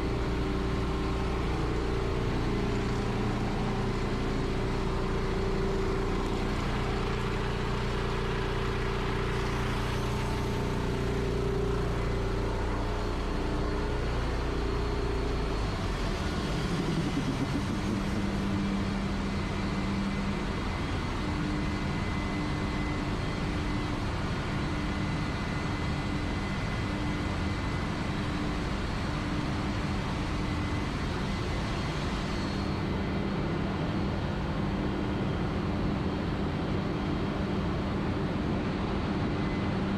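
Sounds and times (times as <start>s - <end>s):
pulsing tone: 0.0s - 21.0s
engine room machinery noise: 0.0s - 39.9s.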